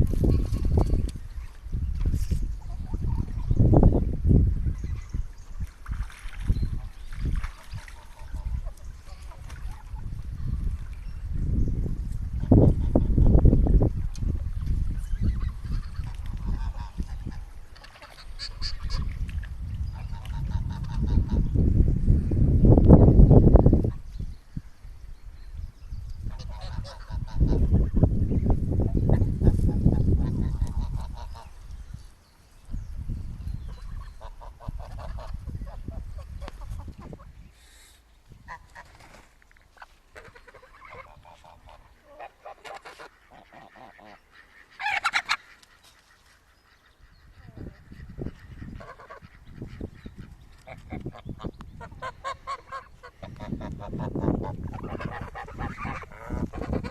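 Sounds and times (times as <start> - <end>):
ducks quacking: 15.3 - 19.2, 19.9 - 21.5, 26.3 - 28.0, 29.0 - 31.6, 33.8 - 37.3, 39.8 - 56.9
geese honking: 40.2 - 56.9.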